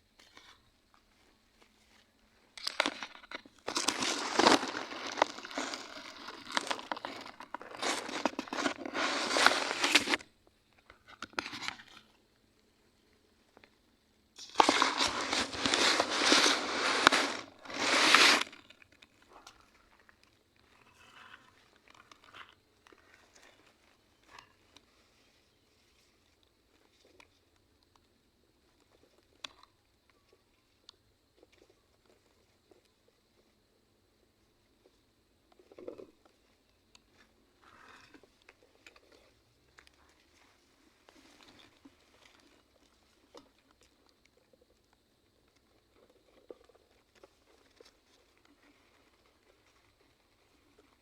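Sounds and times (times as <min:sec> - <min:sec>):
faint crackles: 0:00.0 - 0:51.0
dry leaves crunching and rustling: 0:03.7 - 0:10.2, 0:14.4 - 0:18.6.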